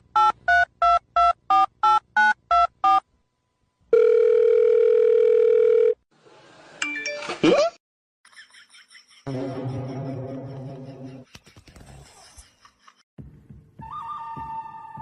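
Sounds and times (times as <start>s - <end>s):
telephone ringing tone: 3.9s - 6.0s.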